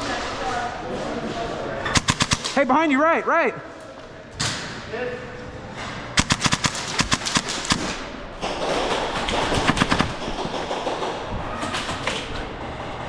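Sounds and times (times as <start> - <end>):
airsoft guns firing: 1.9 - 2.7, 6.2 - 12.3.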